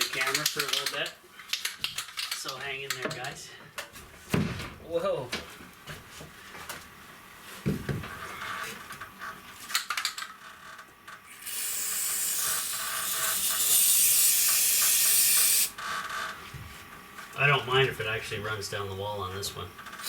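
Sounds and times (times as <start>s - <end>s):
spray can hissing: 11.4s - 15.7s.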